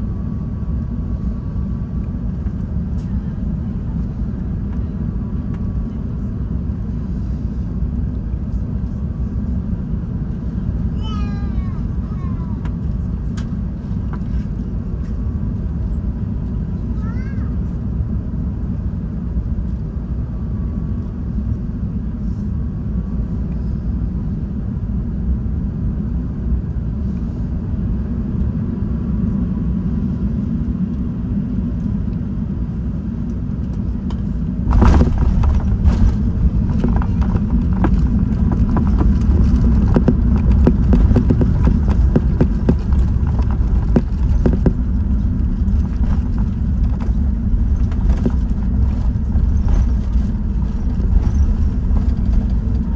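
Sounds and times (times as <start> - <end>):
airplane cabin low rumble: 0.0 - 52.9
wheels touching down and rattling: 34.7 - 52.9.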